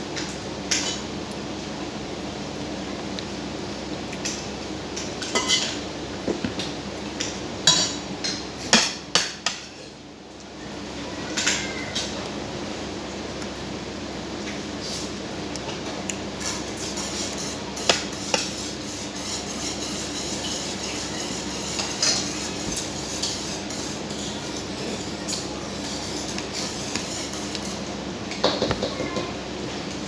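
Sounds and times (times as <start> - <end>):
low background hum: 0.0 - 30.0
cutlery clinking on a plate: 7.7 - 9.6.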